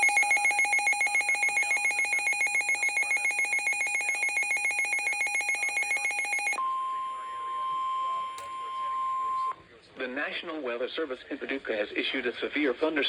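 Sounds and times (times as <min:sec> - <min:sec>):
rapid pulsing alarm beeps: 0:00.0 - 0:09.6
steady warning alarm tone: 0:00.0 - 0:09.6.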